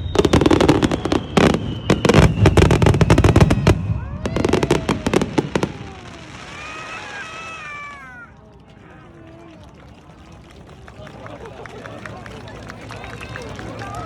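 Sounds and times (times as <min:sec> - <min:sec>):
fireworks bangs and crackles: 0:00.0 - 0:08.1.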